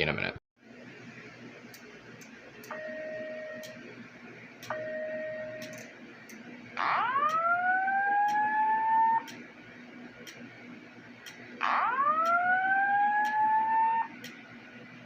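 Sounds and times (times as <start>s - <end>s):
rising whoop alarm tone: 6.8s - 9.4s, 11.6s - 14.3s.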